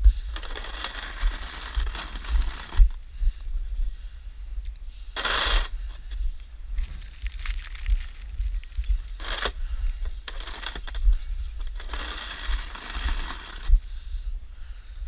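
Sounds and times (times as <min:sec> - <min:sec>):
wind on microphone: 0:00.0 - 0:15.0
snow shovel scraping snow: 0:00.3 - 0:03.0, 0:05.2 - 0:05.7, 0:09.2 - 0:09.6, 0:10.3 - 0:11.0, 0:11.6 - 0:13.7.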